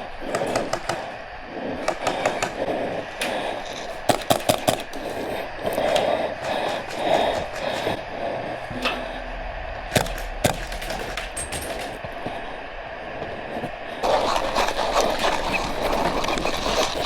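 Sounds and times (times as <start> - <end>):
rapid small clicks and rustle: 3.2 - 8.1, 14.0 - 17.0.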